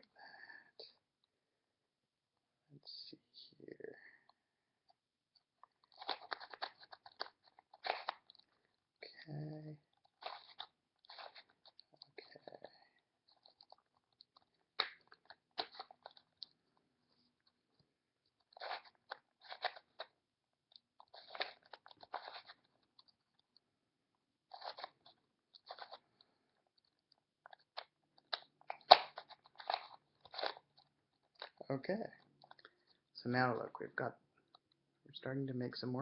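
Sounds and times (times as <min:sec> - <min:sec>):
puzzle cube clicking and scraping: 0:05.4 - 0:23.7, 0:24.4 - 0:33.1.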